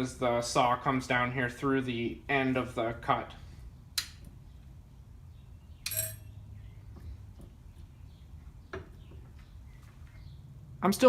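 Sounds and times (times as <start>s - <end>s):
metallic clinks: 5.8s - 6.4s.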